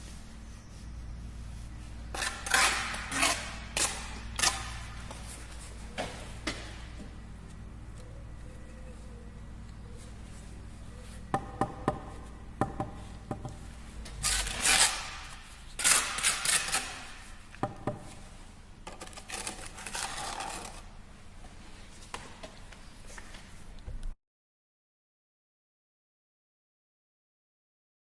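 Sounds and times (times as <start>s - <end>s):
trowel scraping mortar: 2.1s - 4.9s, 14.2s - 17.2s, 18.9s - 20.9s.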